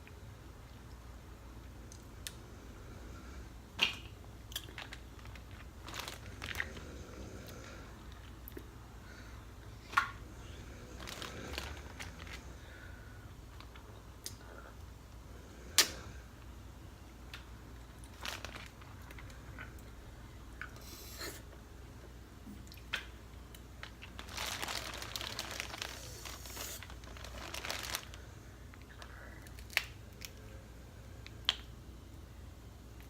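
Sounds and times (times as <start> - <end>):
crinkling and rustling: 4.6 - 6.8, 10.9 - 12.5, 17.8 - 19.8, 23.8 - 29.9.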